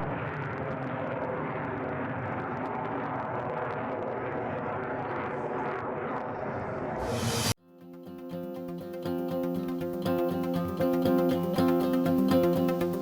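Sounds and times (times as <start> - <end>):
jet engine rush: 0.0 - 7.6.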